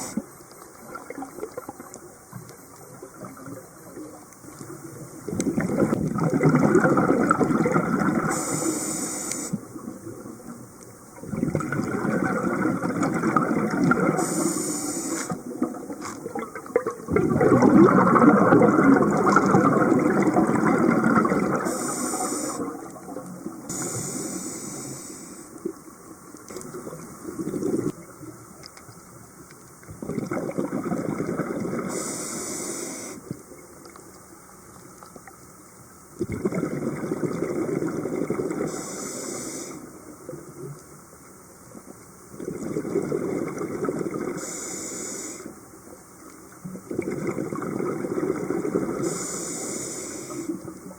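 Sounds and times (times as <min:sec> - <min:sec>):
air hissing through regulator: 0:00.0 - 0:00.2, 0:08.3 - 0:09.7, 0:14.1 - 0:15.4, 0:21.6 - 0:22.7, 0:23.7 - 0:25.5, 0:31.9 - 0:33.3, 0:38.7 - 0:39.9, 0:44.4 - 0:45.5, 0:49.0 - 0:50.6
exhaled bubbles underwater: 0:00.0 - 0:28.6, 0:29.8 - 0:34.0, 0:36.2 - 0:40.9, 0:41.8 - 0:50.9.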